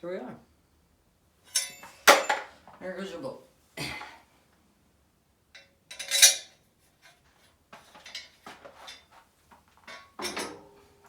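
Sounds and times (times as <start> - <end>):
metal tools clinking: 1.5 - 2.5, 5.6 - 7.2, 7.9 - 9.2, 9.8 - 10.6.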